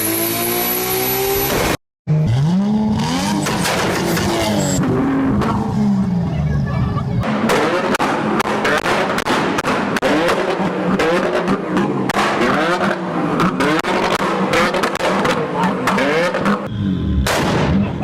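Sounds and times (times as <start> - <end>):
car engine revving: 0.0 - 18.0
exhaust pops and bangs: 3.4 - 5.6, 7.2 - 16.6.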